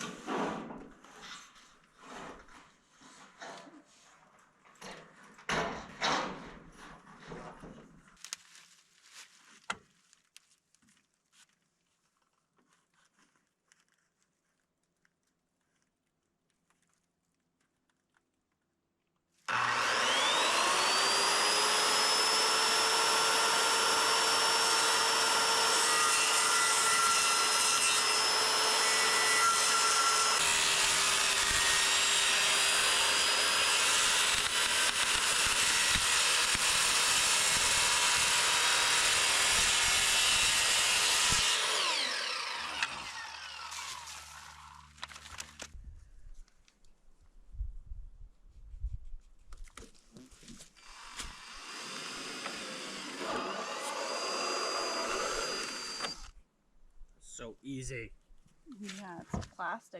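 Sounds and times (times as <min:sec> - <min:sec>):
power tool motor whining: 0:19.5 - 0:45.0, 0:50.8 - 0:56.4.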